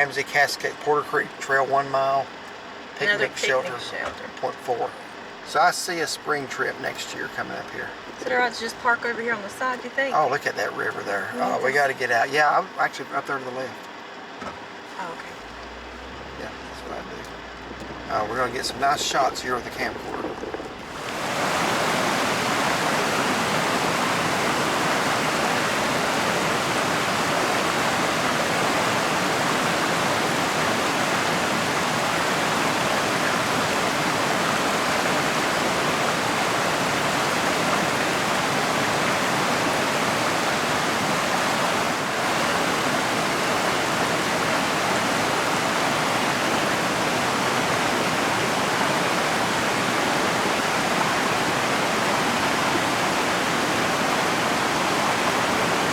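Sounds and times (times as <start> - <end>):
river rushing over rocks: 2.3 - 5.5, 16.1 - 55.9.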